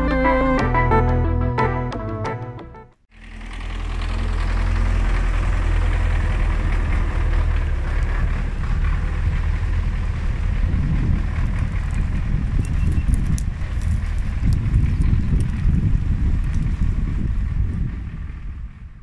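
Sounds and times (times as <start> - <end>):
tractor diesel engine idling: 3.1 - 13.6.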